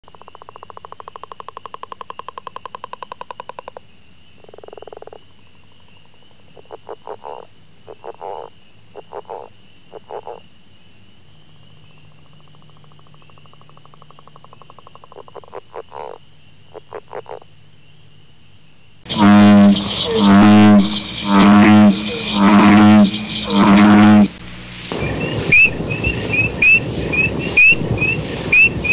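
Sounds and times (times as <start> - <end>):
frogs calling: 0.1 - 28.9
faint high-pitched drone: 19.1 - 24.4.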